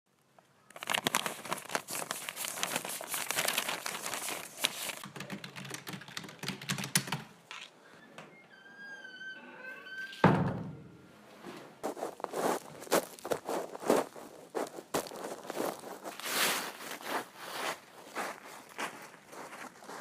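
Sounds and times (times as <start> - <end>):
material crinkling and crackling: 0.2 - 5.0, 11.8 - 19.7.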